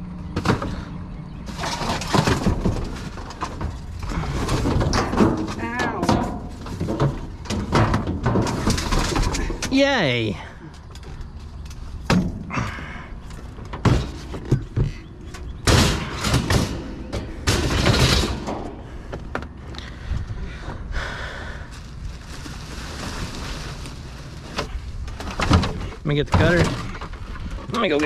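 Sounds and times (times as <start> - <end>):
rustling and scraping: 1.4 - 9.7, 21.6 - 28.0
knocks and thumps: 1.6 - 9.7, 13.6 - 19.5.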